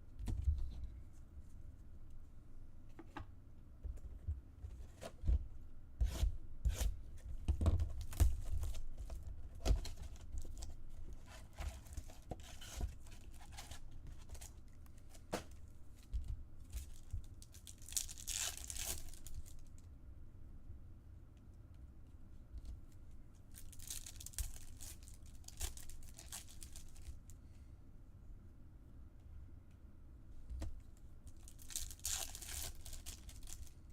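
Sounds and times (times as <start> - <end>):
card packaging tearing and crinkling: 17.6 - 19.6, 23.6 - 27.1, 31.4 - 33.8.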